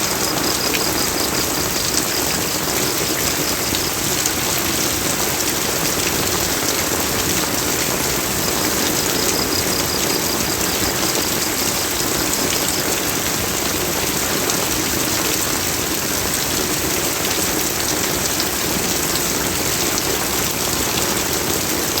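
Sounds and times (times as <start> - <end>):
steady rain falling: 0.0 - 22.0.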